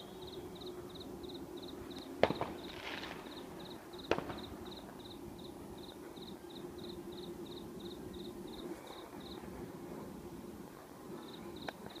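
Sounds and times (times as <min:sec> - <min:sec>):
insect chirping: 0:00.0 - 0:09.4, 0:11.2 - 0:11.8
faint steady hum: 0:00.0 - 0:12.0
firework bang: 0:02.2 - 0:03.4, 0:04.0 - 0:04.5.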